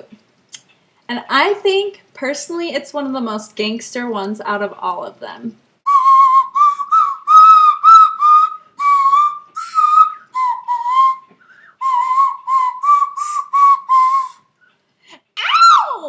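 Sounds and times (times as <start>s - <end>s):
nose flute whistled notes: 5.9s - 14.4s.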